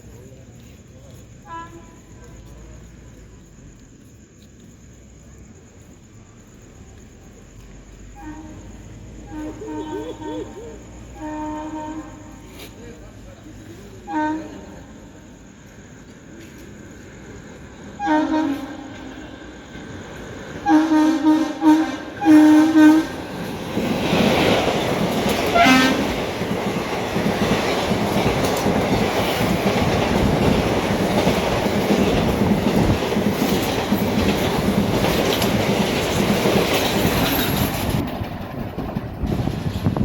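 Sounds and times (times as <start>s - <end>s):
train passing with rushing rumble: 0.0s - 40.0s
train wheel clatter: 6.8s - 40.0s
locomotive horn blasts: 8.2s - 10.5s, 11.2s - 12.5s, 14.1s - 14.6s, 18.0s - 19.2s, 20.6s - 23.2s, 25.5s - 26.1s.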